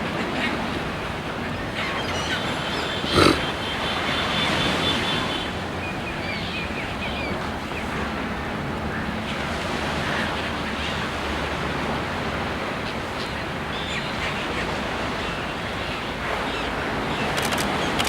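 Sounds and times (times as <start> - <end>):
rushing outdoor noise: 0.0 - 18.0
faint bird calls: 1.5 - 5.5.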